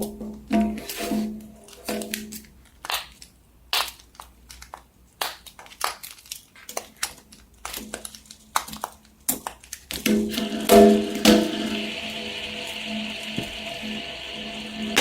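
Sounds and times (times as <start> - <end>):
plastic packaging crinkling: 0.8 - 10.3
plastic toys clicking and tapping: 1.7 - 10.3.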